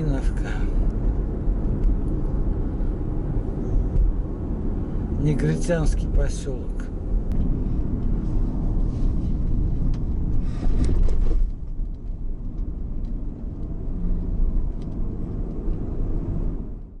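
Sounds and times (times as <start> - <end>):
car interior road rumble: 0.0 - 17.0.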